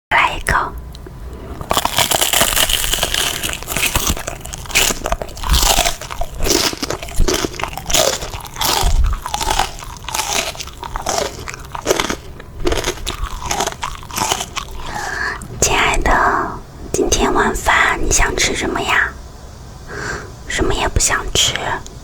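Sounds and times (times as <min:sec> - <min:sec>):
crunchy food chewing: 0:01.3 - 0:15.6.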